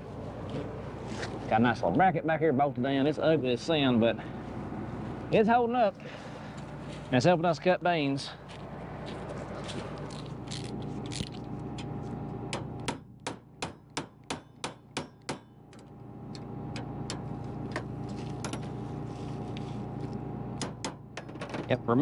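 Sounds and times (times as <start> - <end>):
low engine hum: 3.8 - 13.2, 15.7 - 20.8
hammer clanging on metal: 12.5 - 15.6.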